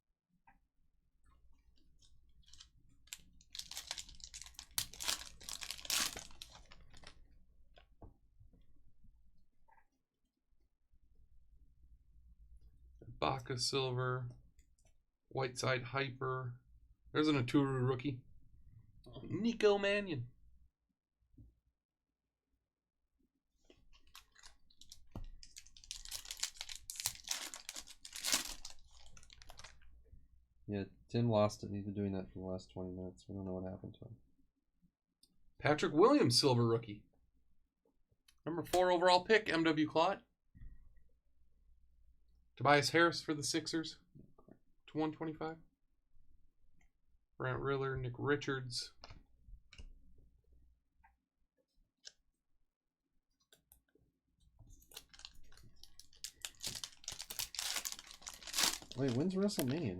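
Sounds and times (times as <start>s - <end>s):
cards and foil wrapper crinkling: 2.4s - 7.2s, 24.0s - 29.9s, 54.8s - 59.9s.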